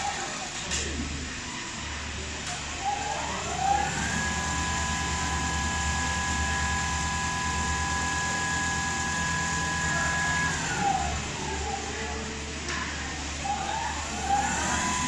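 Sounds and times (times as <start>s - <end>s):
sewing machine stitching: 2.6s - 12.0s, 13.2s - 15.0s.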